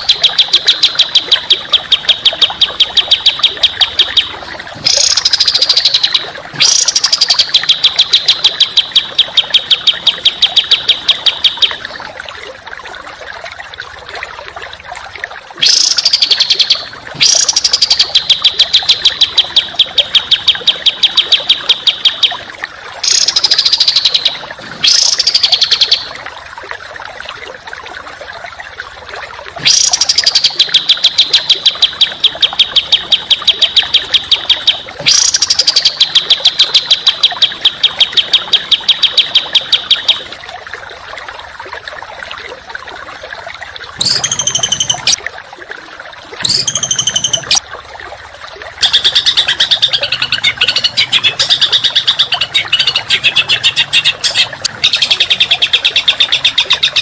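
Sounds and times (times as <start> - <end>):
songbird fast harsh repeated notes: 0.0 - 11.9, 15.6 - 22.4, 23.0 - 26.1, 29.7 - 40.2, 44.0 - 45.2, 46.4 - 47.6, 48.8 - 57.0.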